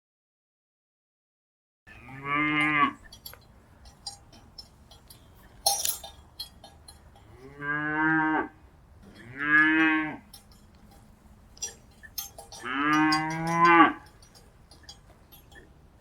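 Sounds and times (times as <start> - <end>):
cow mooing: 1.9 - 3.1, 7.3 - 10.4, 11.6 - 14.3
faint clinks: 1.9 - 7.7, 9.0 - 16.0.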